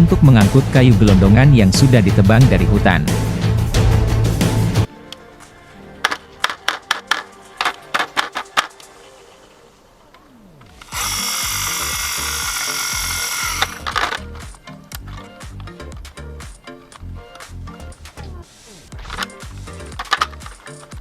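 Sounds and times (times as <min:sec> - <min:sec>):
background music with low beat: 0:00.0 - 0:08.8, 0:10.5 - 0:21.0
loud steady whirring: 0:09.2 - 0:14.6
sharp clicks: 0:10.1 - 0:21.0.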